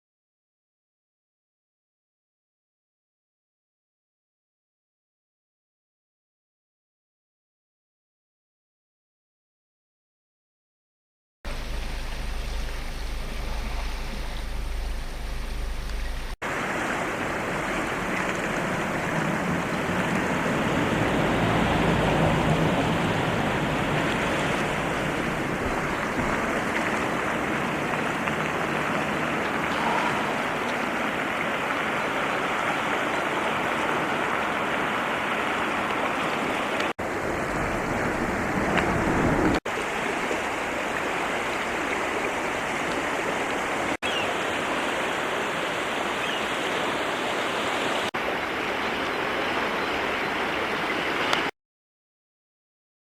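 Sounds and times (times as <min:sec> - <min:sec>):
flooding river water rushing: 0:11.5 - 0:51.5.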